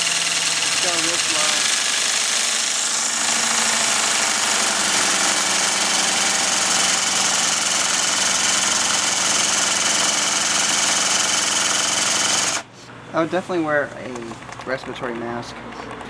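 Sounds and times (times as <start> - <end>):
jigsaw motor running: 0.0 - 12.6.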